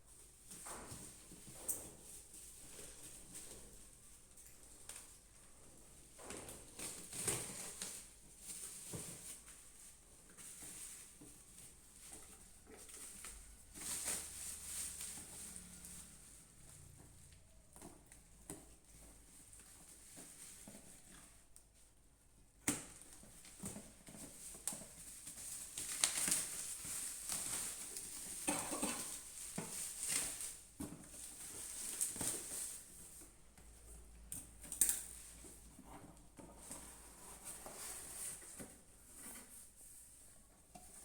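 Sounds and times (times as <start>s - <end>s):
package rustling: 24.5s - 32.9s.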